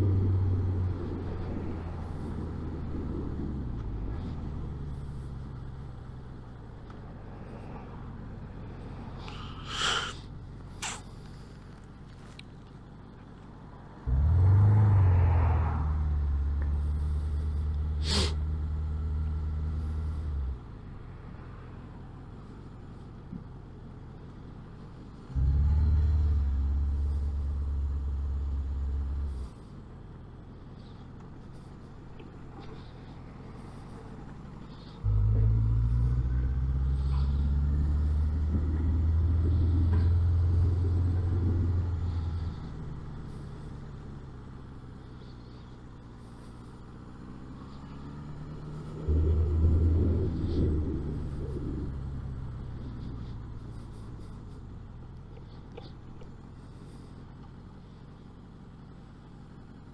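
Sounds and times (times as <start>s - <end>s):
motorcycle engine droning: 24.8s - 59.9s.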